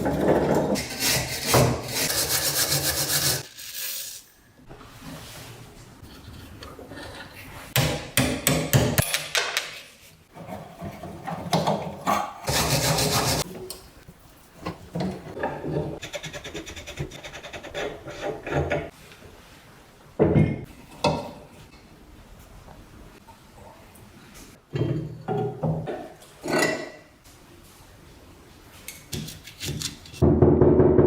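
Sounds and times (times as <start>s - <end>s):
rasping scraping strokes: 0.7s - 4.1s.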